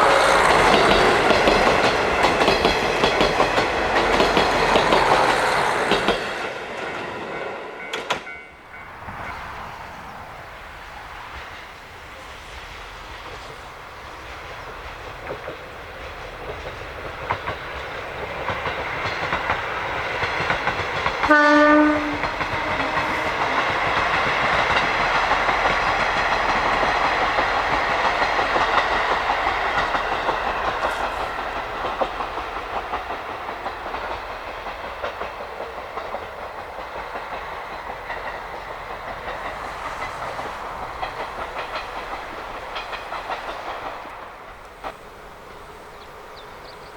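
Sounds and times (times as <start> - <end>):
diesel train passing: 0.0 - 46.9
wheels clattering over rail joints: 13.2 - 46.9
train horn blast: 21.2 - 24.4.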